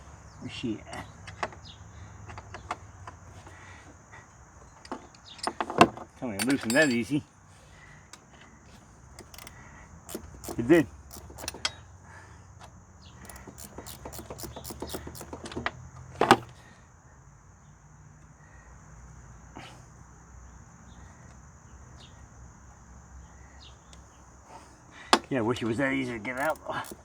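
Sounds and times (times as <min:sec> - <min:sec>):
wrench clicking on a bolt: 0:06.4 - 0:07.1, 0:09.2 - 0:11.8, 0:13.2 - 0:15.7, 0:26.2 - 0:27.0.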